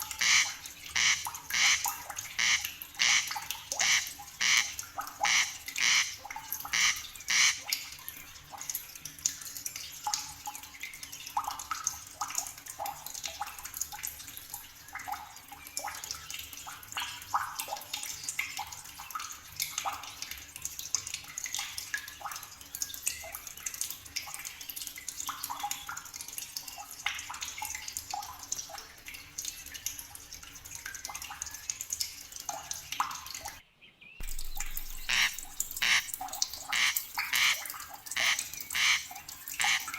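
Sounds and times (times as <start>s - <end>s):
chirping animal calls: 34.2s - 37.6s, 38.2s - 39.9s.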